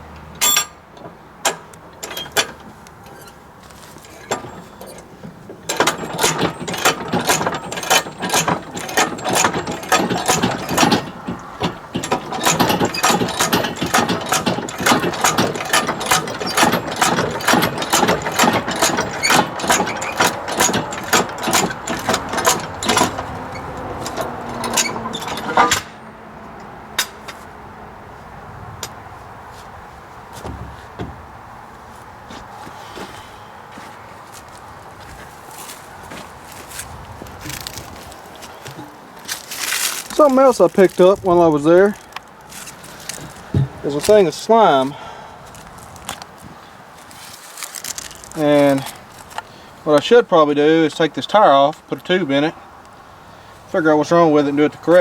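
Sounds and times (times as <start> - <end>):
knocks: 30.4 - 31.3, 43.2 - 43.8.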